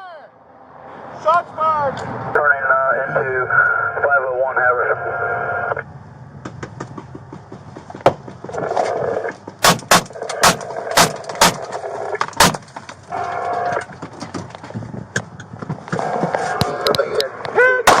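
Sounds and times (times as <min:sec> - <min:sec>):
police radio transmission: 0:02.3 - 0:05.8, 0:08.5 - 0:09.4, 0:13.1 - 0:13.9, 0:16.0 - 0:17.6
sharp loud bangs: 0:09.6 - 0:12.7.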